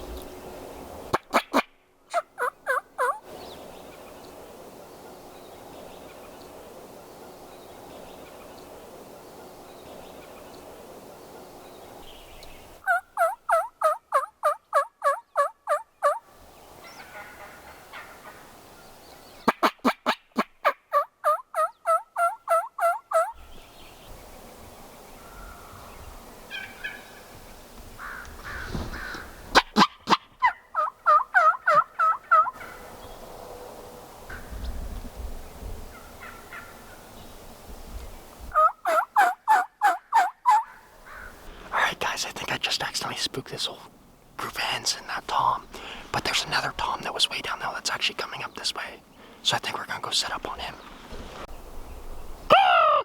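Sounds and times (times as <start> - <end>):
soft turkey calls: 1.0 - 4.2, 11.4 - 23.6, 25.2 - 33.0, 35.8 - 37.1, 38.0 - 51.5
turkey yelping: 1.1 - 3.2, 12.8 - 16.2, 19.5 - 23.4, 28.5 - 32.8, 38.5 - 41.3, 52.5 - 53.0.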